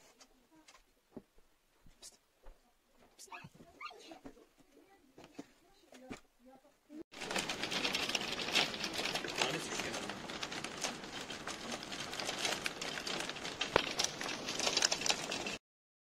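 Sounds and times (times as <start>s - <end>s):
dry crackling and rustling: 7.1s - 15.6s.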